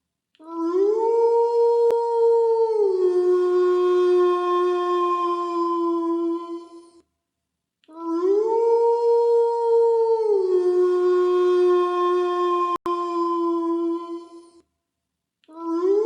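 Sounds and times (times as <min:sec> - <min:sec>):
wolf howling: 0:00.6 - 0:06.8, 0:08.1 - 0:14.4.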